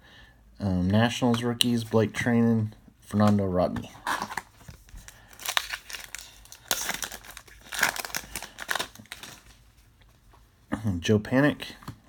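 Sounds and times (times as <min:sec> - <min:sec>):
cards rustling and crinkling: 0:03.1 - 0:10.5.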